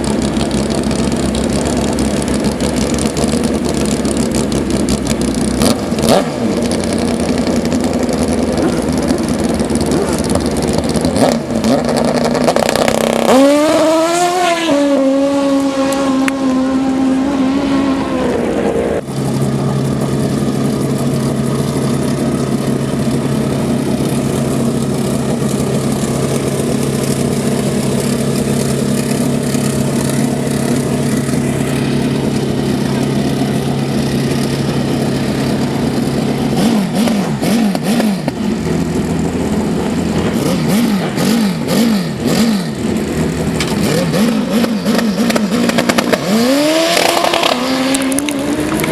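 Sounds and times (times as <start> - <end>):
low engine drone: 0.0 - 48.9
motorcycle engine revving: 0.0 - 48.9
motorcycle engines running: 0.0 - 48.9.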